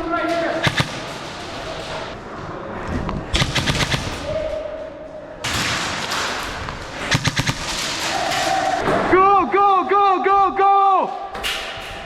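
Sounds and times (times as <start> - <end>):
airsoft guns firing bursts: 0.6 - 1.2, 3.3 - 4.2, 7.0 - 8.4.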